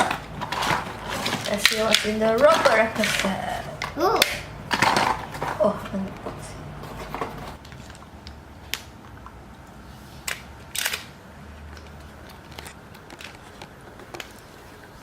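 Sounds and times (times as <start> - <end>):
plastic toy parts clicking: 0.0 - 5.2
plastic parts rattling: 0.0 - 8.0.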